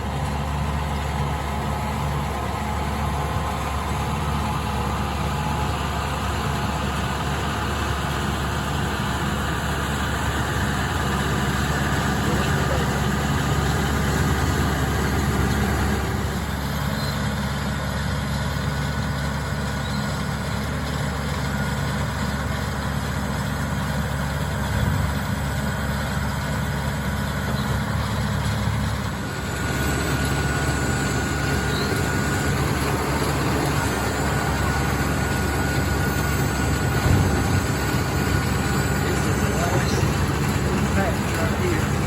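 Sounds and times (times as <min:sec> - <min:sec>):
tractor diesel engine running: 0:00.0 - 0:42.0
thin steady whine: 0:29.3 - 0:42.0.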